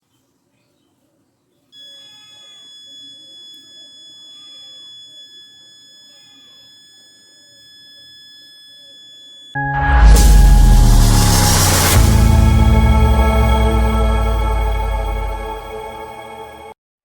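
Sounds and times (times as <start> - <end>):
alarm buzzer high-pitched tone: 1.8 - 16.7.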